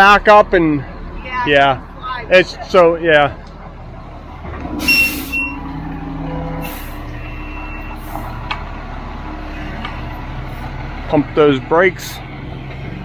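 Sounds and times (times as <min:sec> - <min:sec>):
diesel truck engine running: 0:00.0 - 0:13.0
air brake hissing: 0:04.8 - 0:05.6, 0:06.6 - 0:08.4.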